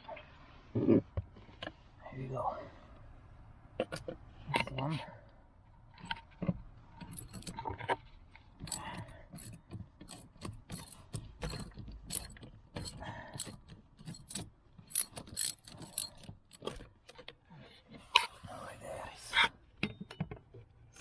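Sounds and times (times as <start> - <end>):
ratchet wrench clicking: 7.1 - 7.5, 8.7 - 16.2.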